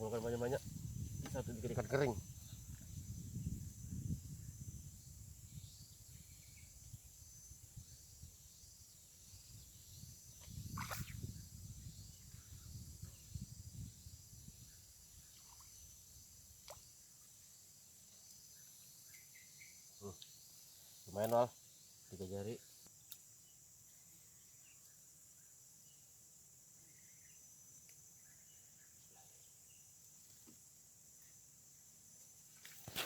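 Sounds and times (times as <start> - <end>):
low rumble on microphone: 0.0 - 8.4
high insect drone: 0.0 - 33.0.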